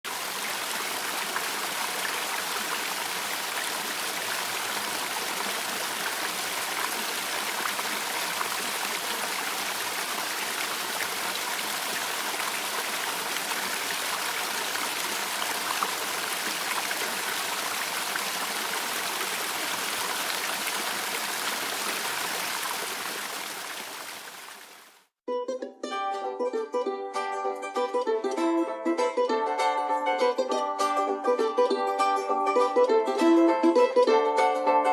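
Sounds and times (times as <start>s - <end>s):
water flowing: 0.0s - 25.1s.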